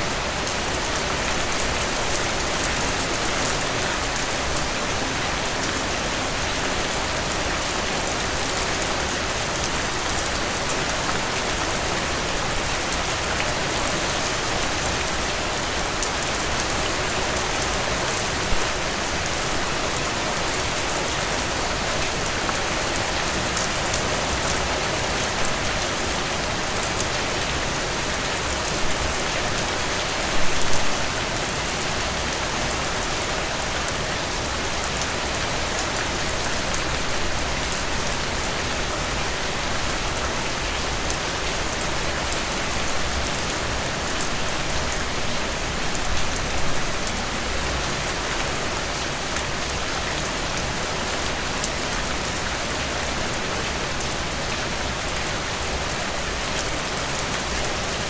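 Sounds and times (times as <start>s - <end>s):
steady rainfall hiss: 0.0s - 58.0s.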